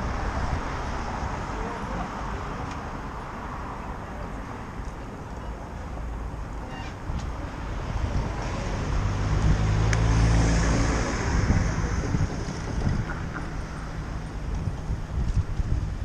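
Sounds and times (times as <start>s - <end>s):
street traffic: 0.0s - 16.0s
wind on microphone: 6.7s - 16.0s
vehicle passing by: 7.4s - 14.4s.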